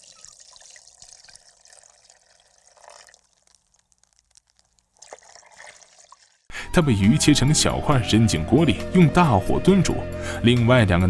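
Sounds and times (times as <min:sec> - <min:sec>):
small ticks and plinks: 0:00.0 - 0:05.5
water dripping and trickling: 0:00.0 - 0:06.5.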